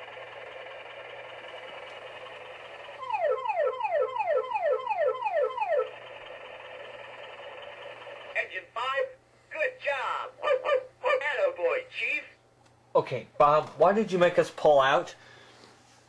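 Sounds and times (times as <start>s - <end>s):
toy electronic siren: 0.0s - 8.4s.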